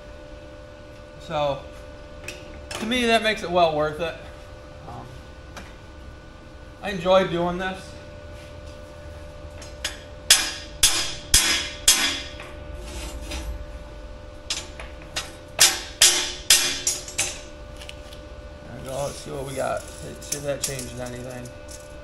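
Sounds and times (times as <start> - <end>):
hammer striking steel rebar: 10.3 - 12.4, 15.6 - 17.4.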